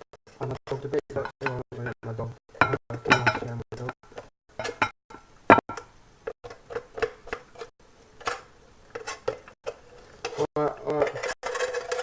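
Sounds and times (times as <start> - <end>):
utensils clicking and scraping: 6.5 - 12.0.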